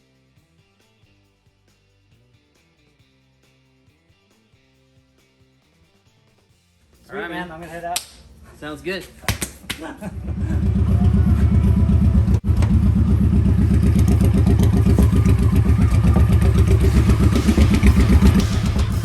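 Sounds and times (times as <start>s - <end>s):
vehicle engine throbbing: 10.0s - 19.0s.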